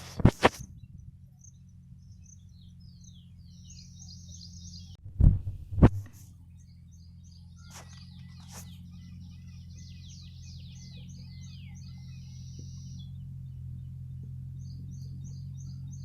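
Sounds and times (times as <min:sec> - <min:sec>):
small birds chirping: 0:00.0 - 0:16.0
steady low hum: 0:00.0 - 0:16.0
bird trill: 0:00.8 - 0:05.0, 0:06.4 - 0:16.0.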